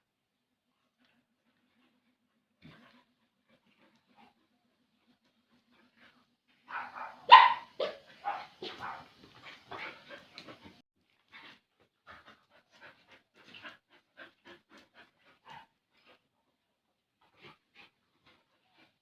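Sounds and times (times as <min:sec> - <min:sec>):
dog barking: 0:06.7 - 0:09.1.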